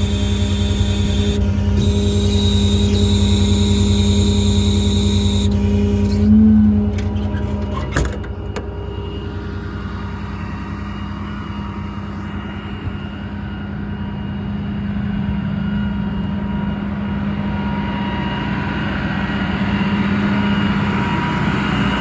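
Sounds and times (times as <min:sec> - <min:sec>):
air compressor hiss: 0:00.0 - 0:06.3
diesel engine hum: 0:00.0 - 0:22.0.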